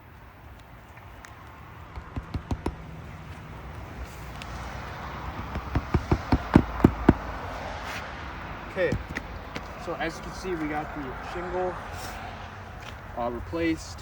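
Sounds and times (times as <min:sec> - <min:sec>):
sharp knocks on shingle roof: 0:01.8 - 0:03.0, 0:05.2 - 0:07.4, 0:08.8 - 0:09.6.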